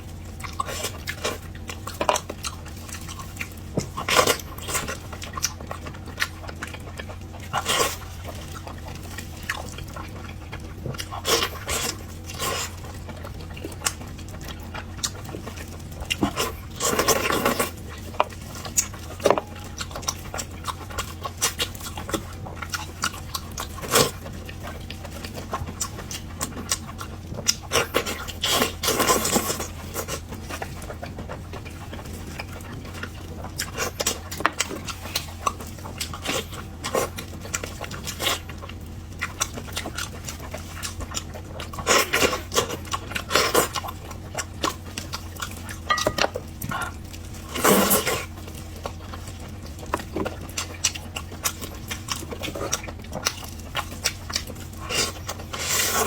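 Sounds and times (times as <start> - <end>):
wet chewing: 0.0 - 56.0.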